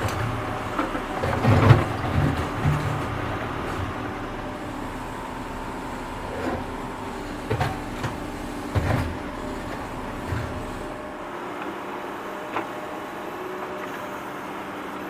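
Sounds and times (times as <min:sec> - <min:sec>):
dull knocks and clanks of digging: 0:00.0 - 0:04.0, 0:07.4 - 0:10.7
tractor engine running: 0:00.0 - 0:11.3.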